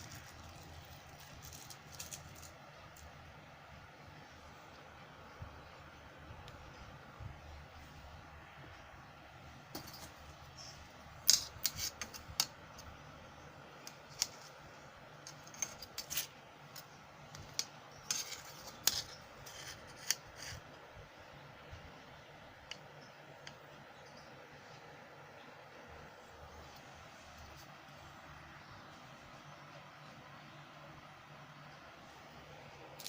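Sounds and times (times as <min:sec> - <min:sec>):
small hard objects clicking: 0:00.0 - 0:03.1.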